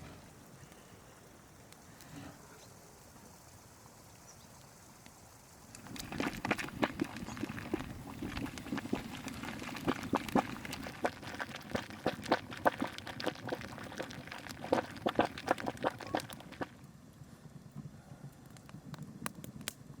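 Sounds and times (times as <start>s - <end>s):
water boiling and bubbling: 5.2s - 17.2s.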